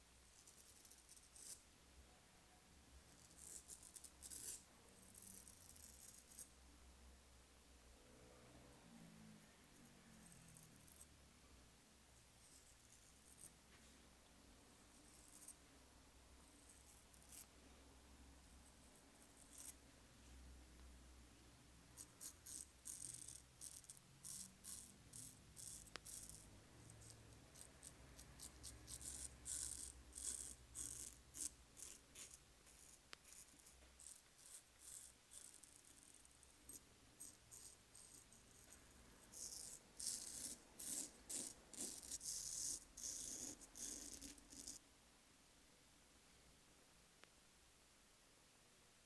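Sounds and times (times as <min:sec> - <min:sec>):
razor scraping stubble: 0:22.0 - 0:44.8.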